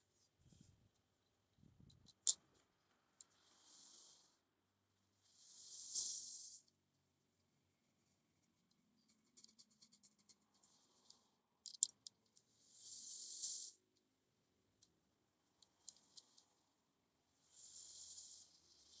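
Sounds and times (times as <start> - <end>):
small clicks and rattles: 0.9 - 3.5, 8.4 - 13.1, 14.8 - 16.6
short hiss: 5.4 - 6.6, 12.8 - 13.8.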